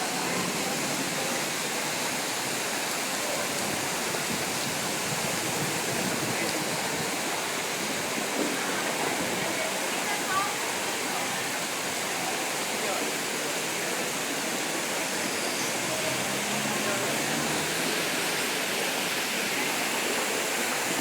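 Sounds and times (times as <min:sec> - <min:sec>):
heavy rainwater rushing: 0:00.0 - 0:21.0.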